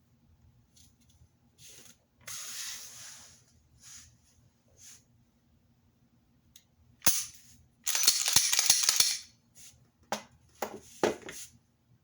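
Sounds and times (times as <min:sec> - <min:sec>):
pistol parts clicking and rattling: 0:07.9 - 0:09.3.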